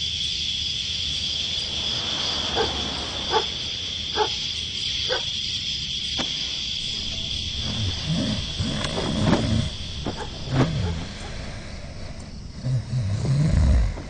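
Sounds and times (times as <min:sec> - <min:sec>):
night insects chirring: 0:00.0 - 0:14.0
dog barking: 0:02.5 - 0:05.3.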